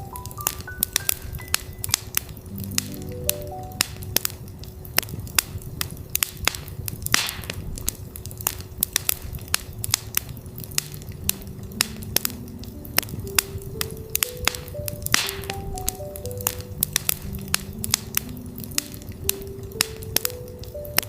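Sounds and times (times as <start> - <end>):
campfire crackling and popping: 0.0 - 21.0.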